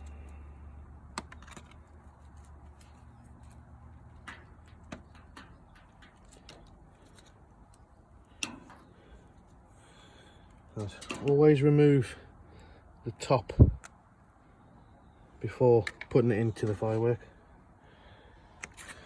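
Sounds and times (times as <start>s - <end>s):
small parts clicking and tapping: 0.0s - 9.6s.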